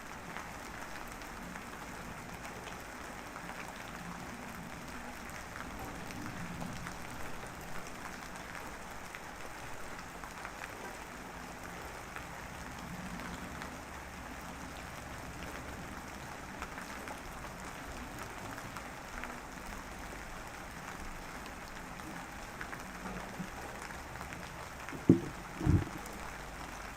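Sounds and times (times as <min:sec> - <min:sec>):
light drizzle patter: 0:00.0 - 0:26.9
loud dull thumps: 0:24.9 - 0:26.1.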